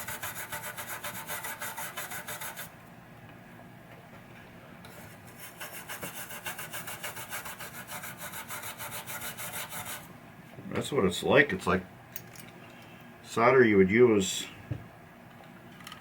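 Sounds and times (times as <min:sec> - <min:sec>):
toothbrush scrubbing circuit board: 0:00.0 - 0:02.7, 0:05.3 - 0:10.1.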